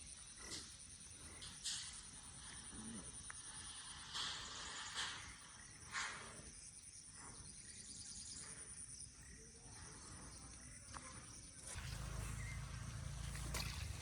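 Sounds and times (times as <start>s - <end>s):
crickets droning: 0.0s - 14.0s
low rumble: 11.7s - 14.0s.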